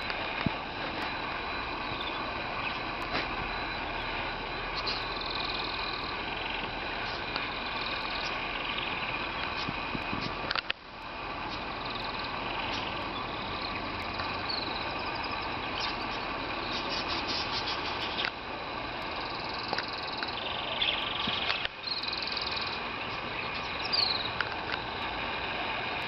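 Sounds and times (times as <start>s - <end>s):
birds chirping and trilling: 0.0s - 26.0s
steady background hum: 0.0s - 26.0s.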